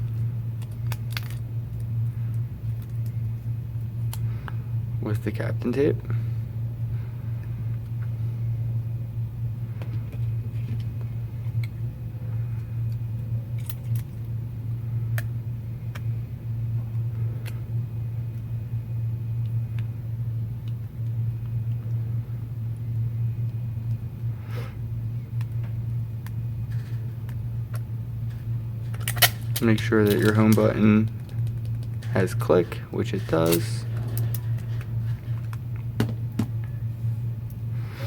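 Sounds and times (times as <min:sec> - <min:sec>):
steady low hum: 0:00.0 - 0:38.0
tape clicks and ticks: 0:25.4 - 0:32.3.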